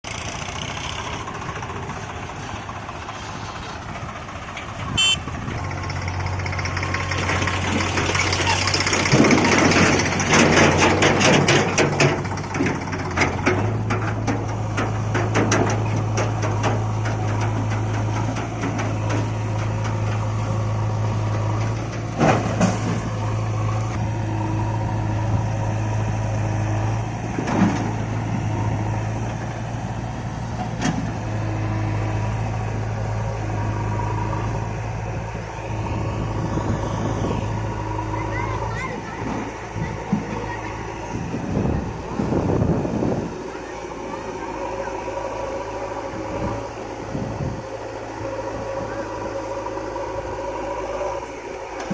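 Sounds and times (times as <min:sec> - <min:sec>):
diesel engine running at low revs: 0:00.0 - 0:51.9
rattling: 0:05.6 - 0:23.9
sharp metallic knocks: 0:06.6 - 0:20.3.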